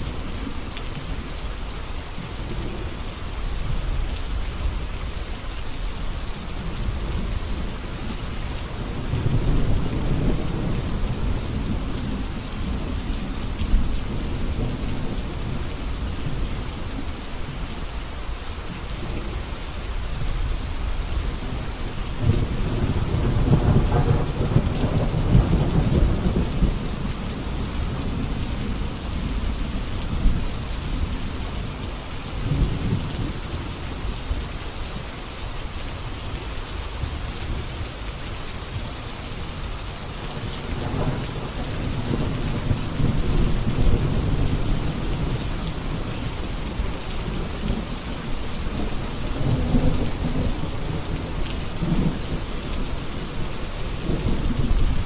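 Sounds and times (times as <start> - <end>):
steady rain falling: 0.0 - 55.0
rolling thunder: 21.4 - 31.2, 40.3 - 55.0.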